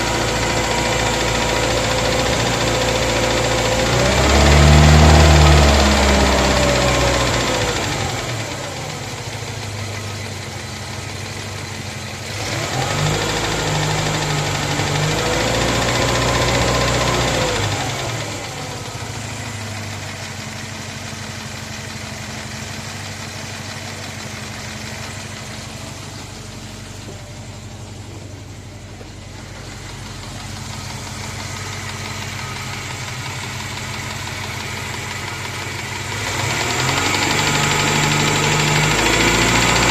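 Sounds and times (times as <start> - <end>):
car engine revving and idling: 0.0 - 39.9
engine knock: 0.0 - 39.9.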